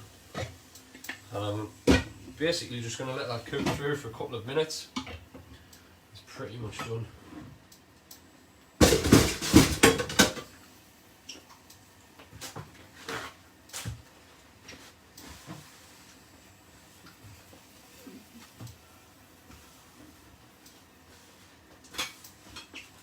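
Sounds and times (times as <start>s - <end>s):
pan and metal utensils clattering: 8.8s - 10.5s, 21.9s - 22.9s.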